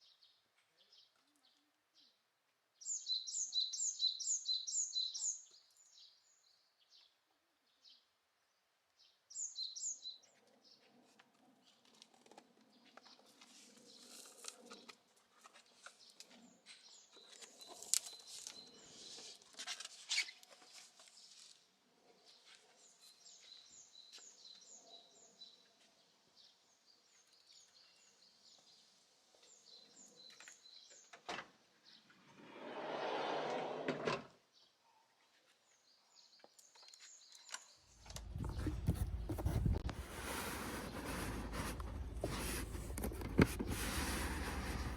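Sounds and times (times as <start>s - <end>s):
songbird singing repeated high notes: 2.8s - 6.3s, 9.3s - 10.2s
bird chirps: 2.8s - 7.1s, 9.0s - 10.8s.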